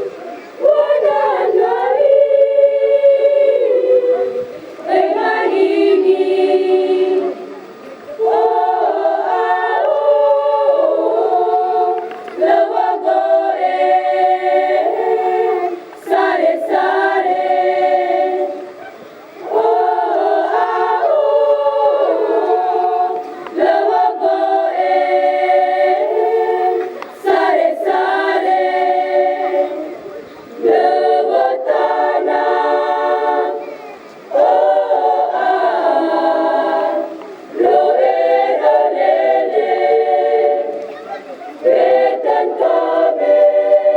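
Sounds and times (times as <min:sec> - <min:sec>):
choir singing unaccompanied: 0:00.0 - 0:43.9.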